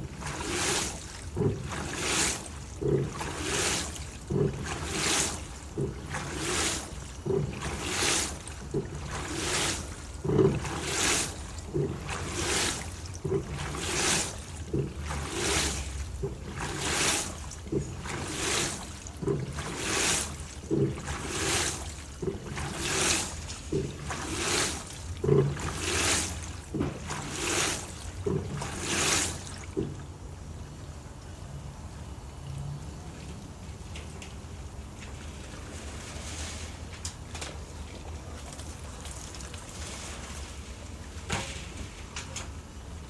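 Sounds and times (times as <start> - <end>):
washing machine sloshing water: 0.0 - 43.0
washing machine drum thump: 1.1 - 2.2, 7.2 - 11.0, 11.7 - 12.6, 13.2 - 20.0, 20.6 - 21.5, 23.7 - 27.4, 28.2 - 28.8.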